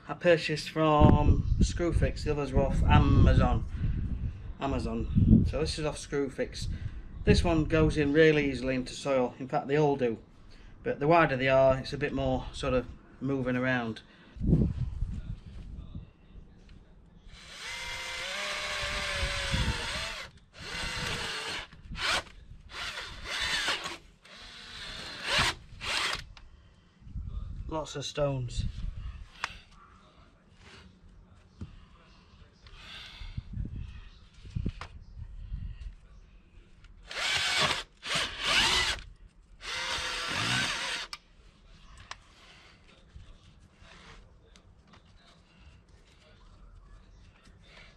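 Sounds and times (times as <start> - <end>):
cordless drill drilling into soil: 17.4 - 26.3, 37.1 - 41.2.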